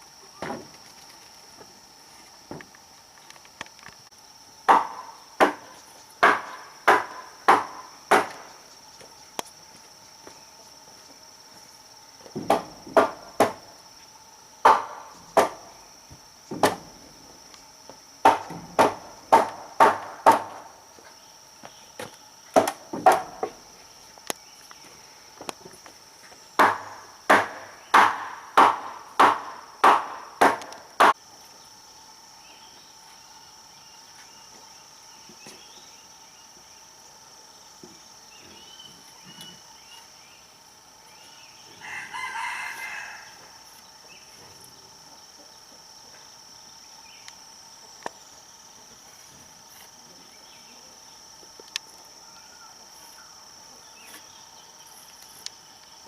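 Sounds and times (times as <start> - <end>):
high insect drone: 0.0 - 56.0
hand tool striking wood: 4.7 - 8.5, 12.3 - 13.6, 14.6 - 15.7, 16.5 - 16.9, 18.2 - 20.7, 22.0 - 23.6, 26.6 - 31.2.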